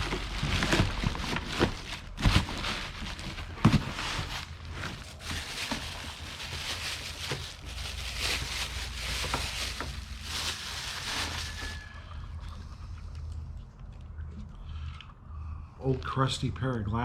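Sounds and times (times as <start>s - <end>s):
rummaging through items in a box: 0.0s - 12.4s.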